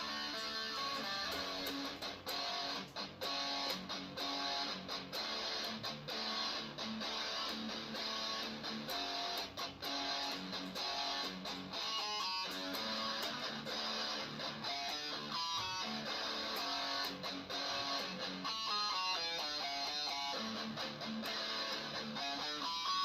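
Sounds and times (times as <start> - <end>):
electric guitar riffs: 0.0 - 23.0.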